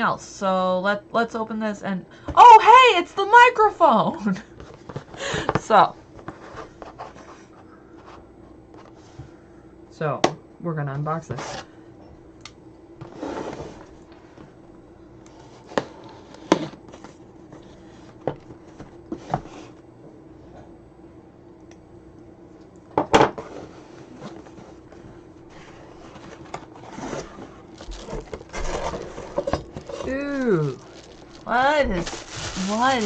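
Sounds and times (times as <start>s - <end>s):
faint steady hum: 0.0s - 33.0s
cardboard rustling: 25.5s - 33.0s.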